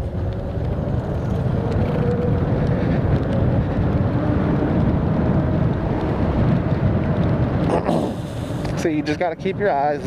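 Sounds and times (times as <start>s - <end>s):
wind rushing over microphone: 0.0s - 10.0s.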